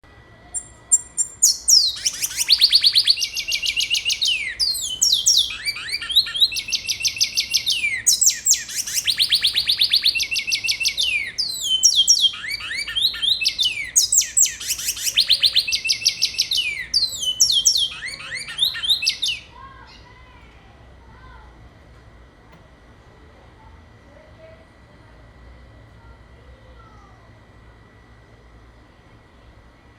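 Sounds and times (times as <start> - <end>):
songbird trilling and whistling: 0.5 - 20.0.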